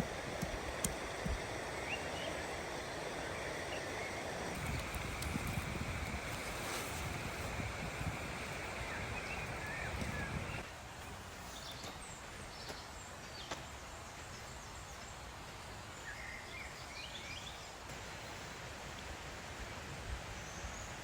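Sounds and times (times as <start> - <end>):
steady outdoor hiss: 0.0 - 21.0.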